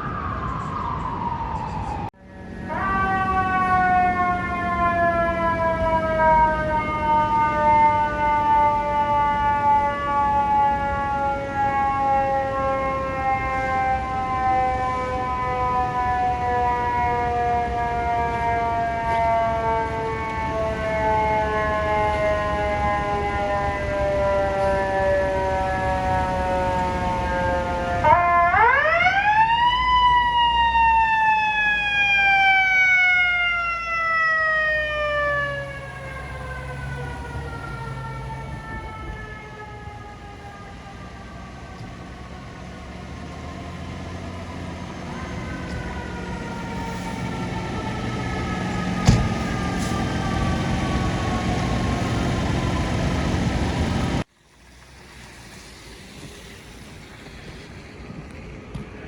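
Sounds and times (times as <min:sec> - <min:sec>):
mechanical siren wailing: 0:00.0 - 0:54.3
quiet traffic: 0:00.0 - 0:59.0
wind: 0:00.0 - 0:59.0
low engine rumble: 0:34.4 - 0:59.0.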